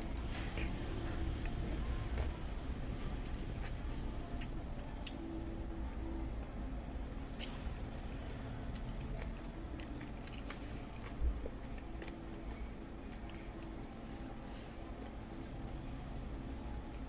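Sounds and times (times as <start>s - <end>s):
close chewing: 0.0s - 5.2s, 7.3s - 16.1s
wet mouth clicks: 7.4s - 7.6s.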